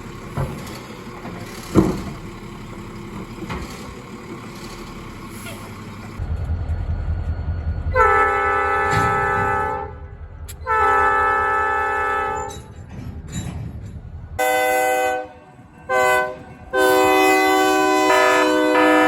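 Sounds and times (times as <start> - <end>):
low rumble: 6.1 - 15.0
locomotive air horn blasts: 7.9 - 12.7, 14.4 - 19.0.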